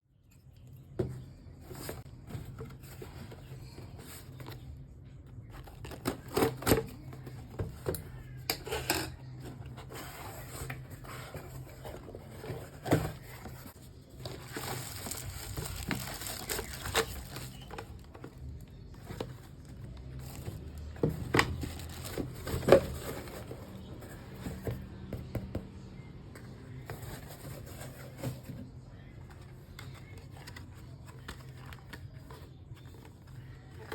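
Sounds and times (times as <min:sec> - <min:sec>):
packaging rustle: 0:09.9 - 0:24.3
plastic crinkling and tearing: 0:14.1 - 0:18.2, 0:21.4 - 0:23.6.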